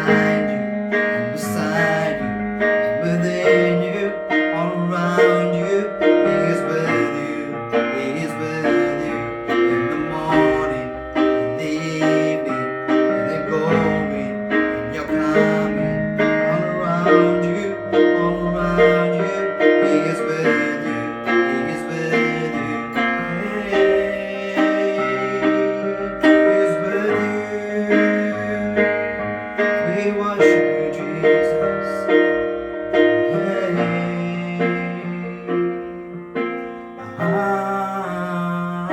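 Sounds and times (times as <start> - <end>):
keyboard worship music: 0.0 - 38.9.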